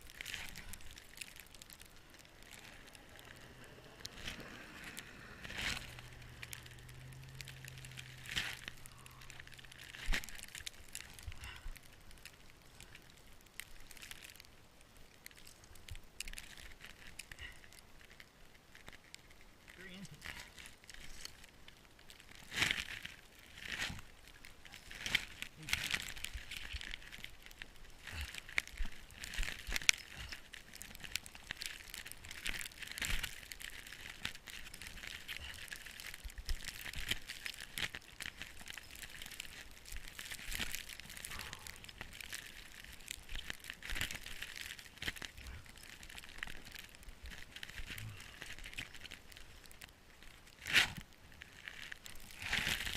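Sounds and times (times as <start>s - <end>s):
snow crunching: 0.0s - 11.6s.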